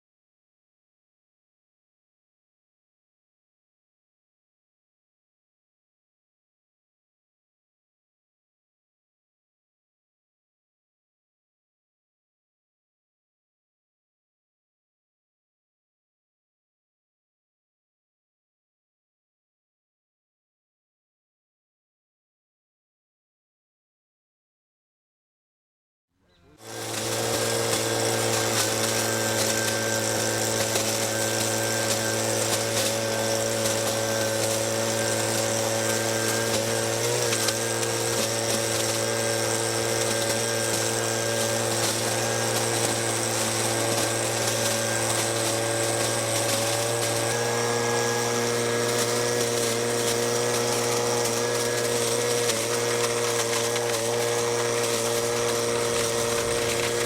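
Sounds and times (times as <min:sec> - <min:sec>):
blower engine and fan running: 0:26.6 - 0:57.0.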